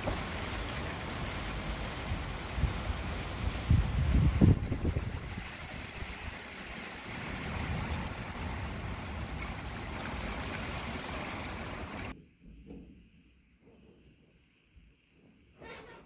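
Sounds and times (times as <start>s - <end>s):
strong storm wind: 0.0s - 12.0s.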